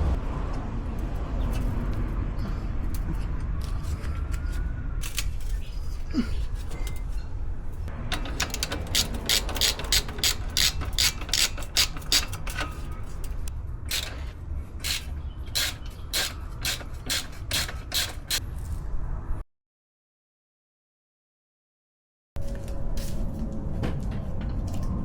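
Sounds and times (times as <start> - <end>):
steady low rumble: 0.0 - 17.0
ratchet wrench clicking: 8.1 - 18.4.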